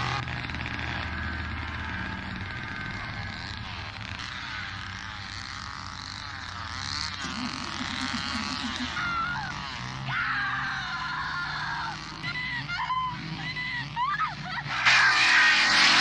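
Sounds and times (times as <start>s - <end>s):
chainsaw revving: 0.0s - 16.0s
vehicle engine running: 0.0s - 16.0s
woman shrieking and laughing: 7.2s - 16.0s.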